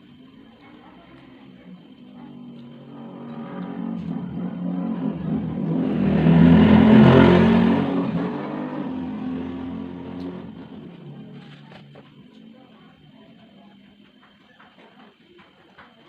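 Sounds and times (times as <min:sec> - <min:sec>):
vehicle passing by: 0:02.7 - 0:11.4.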